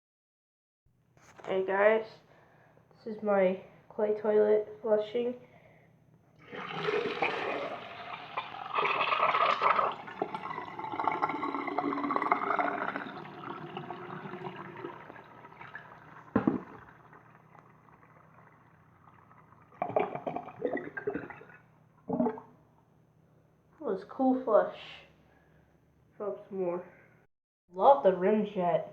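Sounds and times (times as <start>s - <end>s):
toilet flushing: 6.4s - 22.4s
knock: 16.3s - 16.7s.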